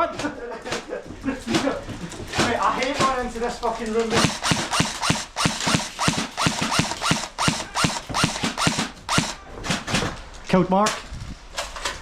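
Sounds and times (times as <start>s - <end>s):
airsoft rifle shots: 4.1s - 10.1s.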